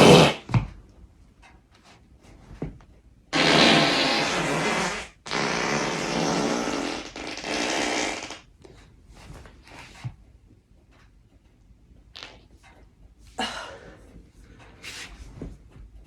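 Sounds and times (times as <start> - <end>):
long loud farts: 0.0 - 0.5, 3.4 - 8.5, 12.2 - 12.4.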